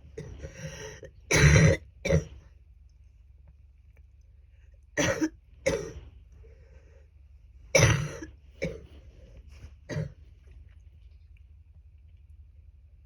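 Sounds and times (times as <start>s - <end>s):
person coughing wetly: 1.3s - 2.3s, 5.0s - 6.0s, 7.8s - 8.9s, 9.9s - 10.2s.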